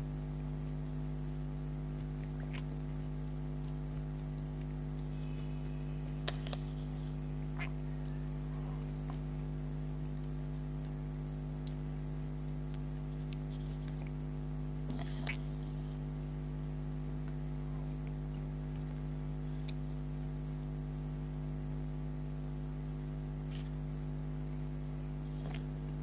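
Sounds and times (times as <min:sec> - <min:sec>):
electrical hum: 0:00.0 - 0:26.0
wet chewing clicks: 0:00.5 - 0:09.3, 0:09.9 - 0:15.9, 0:16.7 - 0:20.6.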